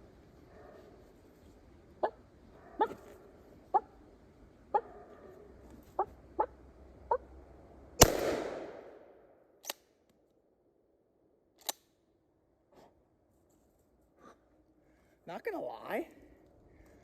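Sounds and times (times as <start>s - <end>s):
dog barks: 0.5s - 1.0s, 2.0s - 4.0s, 4.7s - 7.2s
shotgun blast with echo: 8.0s - 9.0s.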